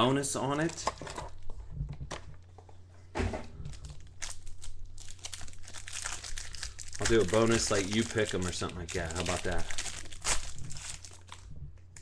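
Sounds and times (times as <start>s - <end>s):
steady low hum: 0.0s - 12.0s
plastic wrapping crinkling and tearing: 3.6s - 11.6s.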